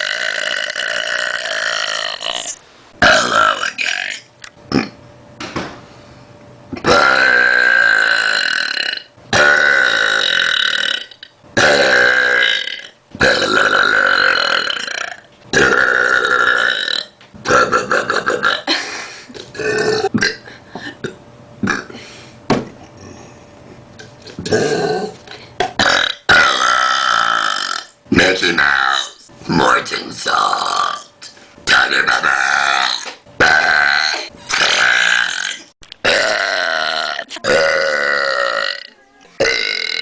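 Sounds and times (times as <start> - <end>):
person belching loudly: 0.0 - 5.0, 6.8 - 18.7, 19.4 - 22.0, 24.3 - 27.9, 28.6 - 29.1, 32.0 - 40.0.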